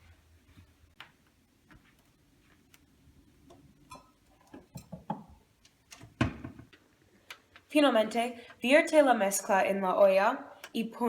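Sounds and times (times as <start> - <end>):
dishes clinking: 3.8 - 5.4
kitchen utensils and dishes clicking: 3.9 - 5.3.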